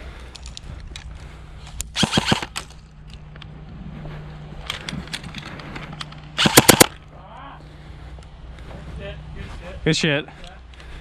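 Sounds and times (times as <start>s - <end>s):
airsoft guns firing: 2.0s - 2.6s, 6.4s - 7.0s.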